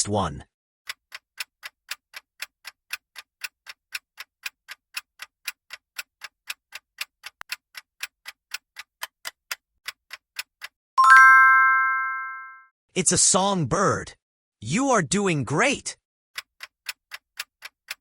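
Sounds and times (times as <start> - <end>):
clock ticking: 0.9 - 11.3, 16.3 - 18.0
bell-like chime: 11.0 - 12.6.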